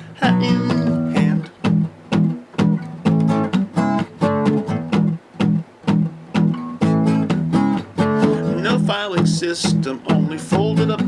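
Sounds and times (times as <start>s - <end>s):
guitar strumming chords: 0.0s - 11.0s.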